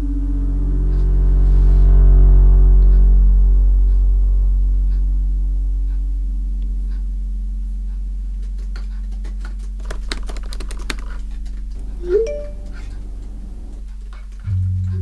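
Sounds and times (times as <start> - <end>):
low musical drone: 0.0 - 15.0
typewriter keys clacking: 9.5 - 13.8.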